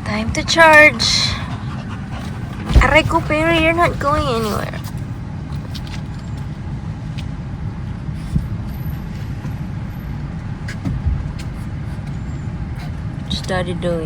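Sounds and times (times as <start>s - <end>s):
low vehicle rumble: 0.0s - 14.0s.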